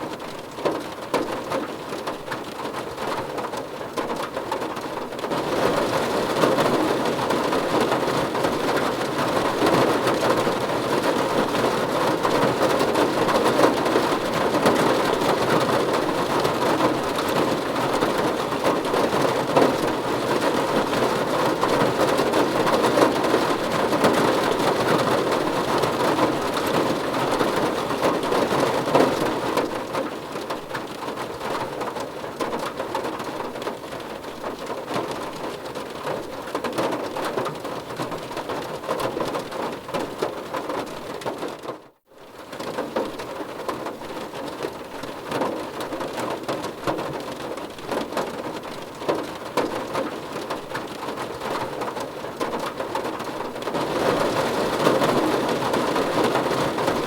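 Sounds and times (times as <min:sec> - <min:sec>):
rain drumming on car roof: 0:00.0 - 0:57.0.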